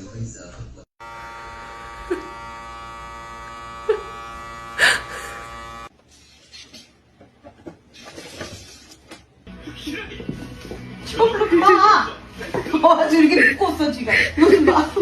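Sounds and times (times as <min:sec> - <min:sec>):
electric motor buzz: 0:01.0 - 0:05.9.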